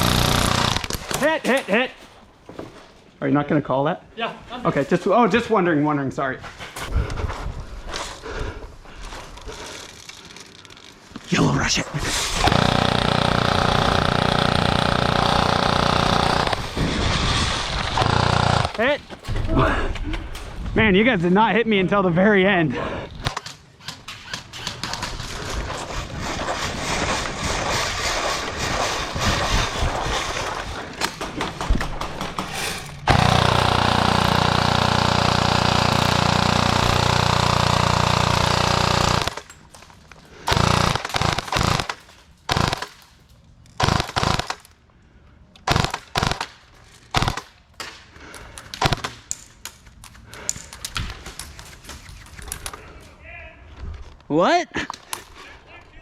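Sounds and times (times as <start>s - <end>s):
airsoft guns firing full auto: 0.0s - 1.0s, 12.4s - 16.8s, 17.8s - 18.9s, 33.1s - 39.5s, 40.4s - 43.0s, 43.8s - 44.7s, 45.6s - 47.6s, 48.7s - 49.2s.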